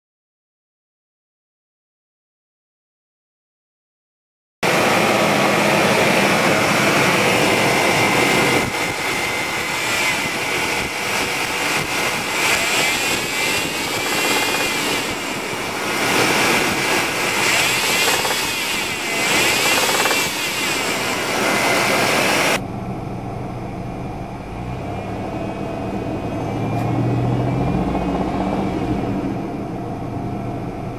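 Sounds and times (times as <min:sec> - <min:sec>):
engine knocking: 0:14.0 - 0:15.0, 0:17.9 - 0:20.9.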